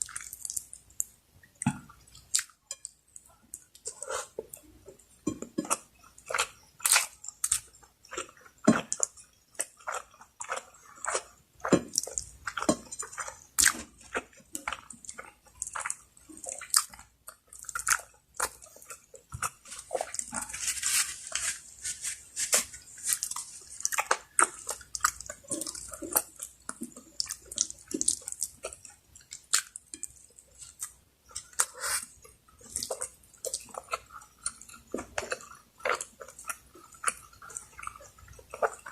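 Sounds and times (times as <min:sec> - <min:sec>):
wet chewing: 0:00.0 - 0:38.9
lip smacks and mouth clicks: 0:22.5 - 0:38.9.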